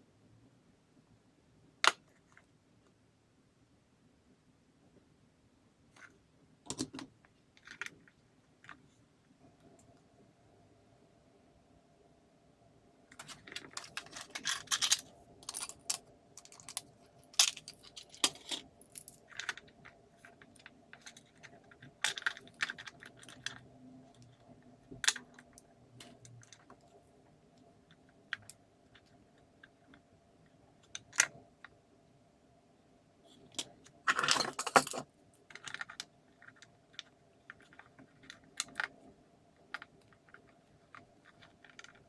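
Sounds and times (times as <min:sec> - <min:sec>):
faint steady hum: 0:00.0 - 0:42.0
small tools clicking and rattling: 0:13.2 - 0:23.6, 0:33.5 - 0:36.0.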